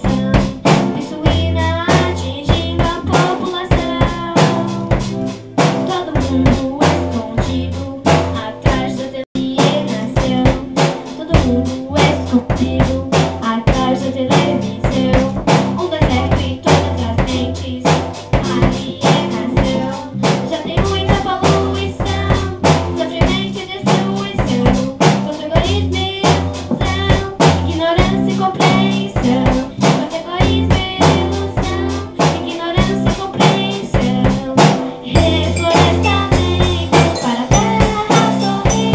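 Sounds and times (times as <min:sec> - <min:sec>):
drum kit beat: 0:00.0 - 0:38.9
school band playing: 0:02.8 - 0:08.4, 0:34.6 - 0:38.9.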